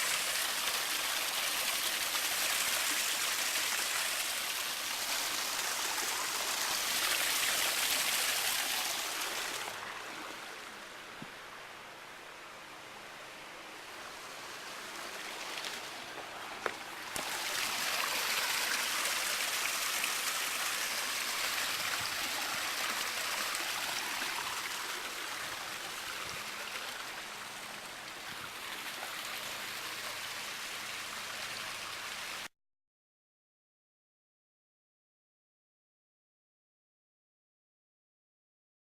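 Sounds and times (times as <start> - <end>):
waterfall splashing into pool: 0.0 - 9.9, 14.7 - 32.4.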